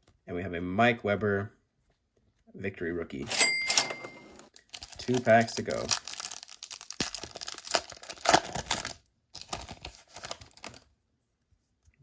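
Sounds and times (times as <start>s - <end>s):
wrapper crinkling: 4.4s - 10.9s.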